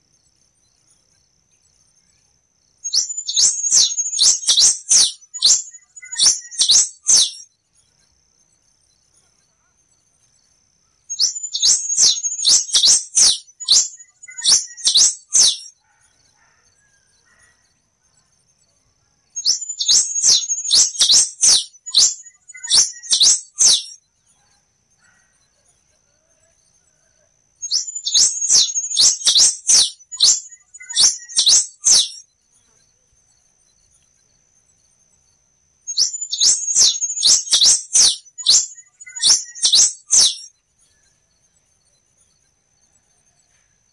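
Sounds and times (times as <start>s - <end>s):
finch singing: 2.8s - 7.5s, 11.1s - 15.8s, 19.4s - 24.0s, 27.6s - 32.2s, 35.9s - 40.5s.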